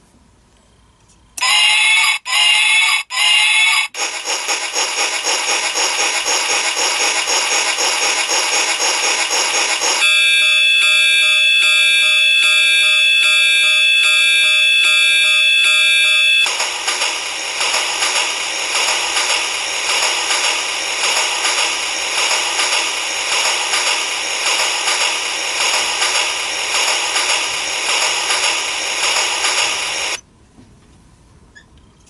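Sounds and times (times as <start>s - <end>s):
electronic alarm tones: 10.0s - 16.5s.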